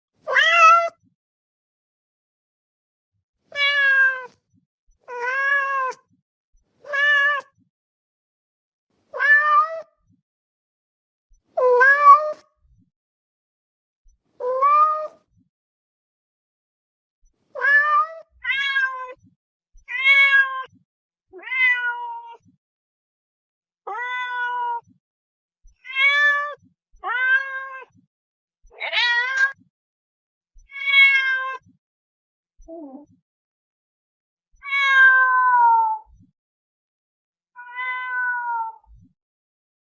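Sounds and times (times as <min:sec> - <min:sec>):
cat meowing: 0:00.3 - 0:00.9, 0:03.6 - 0:04.3, 0:05.1 - 0:06.0, 0:06.8 - 0:07.5, 0:09.2 - 0:09.9, 0:17.6 - 0:19.2, 0:19.9 - 0:20.7, 0:21.4 - 0:22.4, 0:23.9 - 0:24.9, 0:25.8 - 0:27.9, 0:28.8 - 0:29.6, 0:30.7 - 0:31.6, 0:34.6 - 0:36.1, 0:37.6 - 0:38.9.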